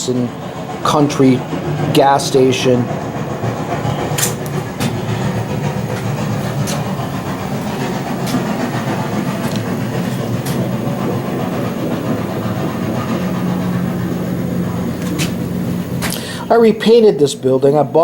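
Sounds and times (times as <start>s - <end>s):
model train rumbling on track: 0.0s - 18.0s
sharp clicks of model train: 2.0s - 12.2s.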